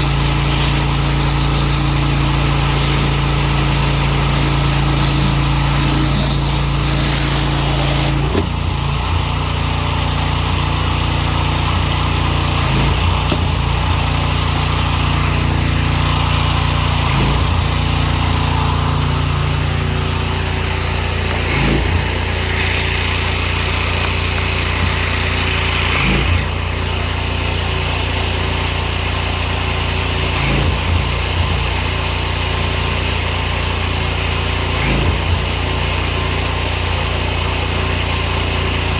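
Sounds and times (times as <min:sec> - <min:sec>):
pressure washer running: 0:00.0 - 0:38.9.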